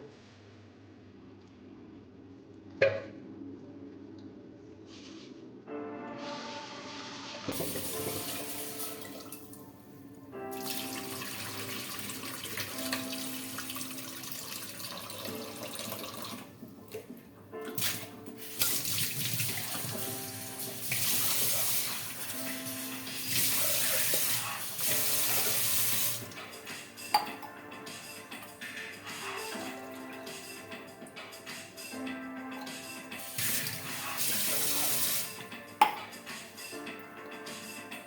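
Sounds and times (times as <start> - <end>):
background music simple melody: 4.9 - 38.0
tap water running into sink: 7.5 - 9.6, 10.5 - 27.5, 32.7 - 36.8.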